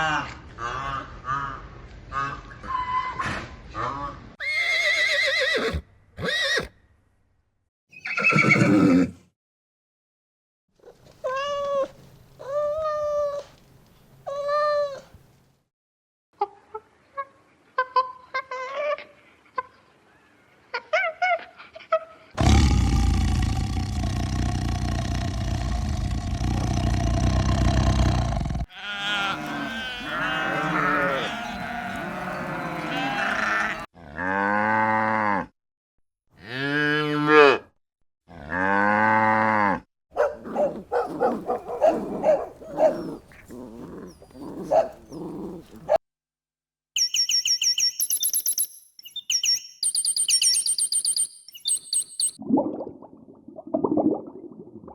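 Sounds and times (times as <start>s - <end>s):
long rough animal call: 22.4s - 35.5s
cow mooing: 28.7s - 35.5s
high rapid chirps: 47.0s - 52.4s.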